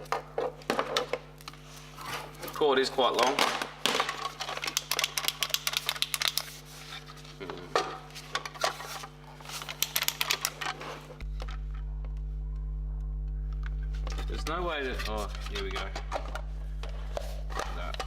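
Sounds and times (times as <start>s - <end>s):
steady electrical hum: 0.0s - 18.0s
plastic compressor clicks and rattles: 3.2s - 6.6s, 9.6s - 10.8s.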